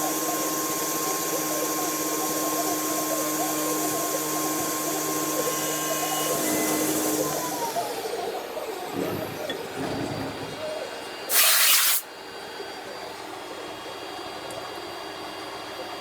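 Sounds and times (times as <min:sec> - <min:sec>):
low machine-shop hum: 0:00.0 - 0:16.0
compressed air blast hissing: 0:11.3 - 0:12.0.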